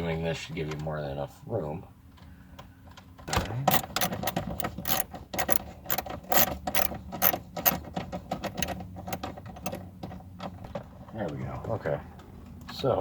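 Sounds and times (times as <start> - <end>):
plastic clicks and rattles: 3.7 - 10.2.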